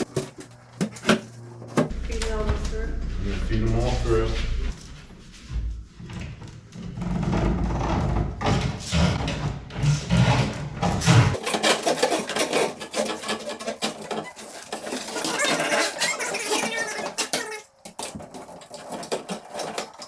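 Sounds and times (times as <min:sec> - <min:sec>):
wood scraping and rubbing: 0:00.0 - 0:20.0
low rumble: 0:01.9 - 0:08.4.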